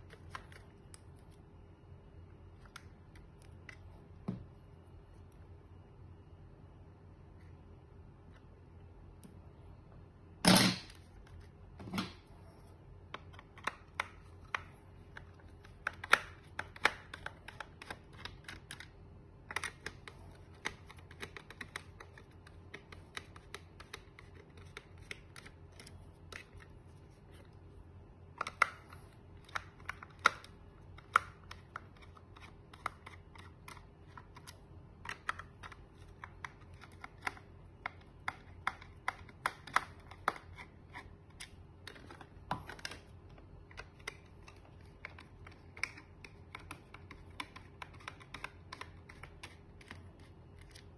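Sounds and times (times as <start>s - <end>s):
small clicks and taps: 28.3s - 50.9s.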